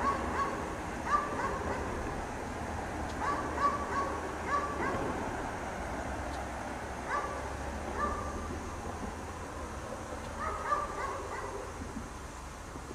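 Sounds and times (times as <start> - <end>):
dog barking: 0.0 - 2.0, 3.2 - 5.1, 7.0 - 8.4, 10.4 - 11.8
steady background hiss: 0.0 - 12.9.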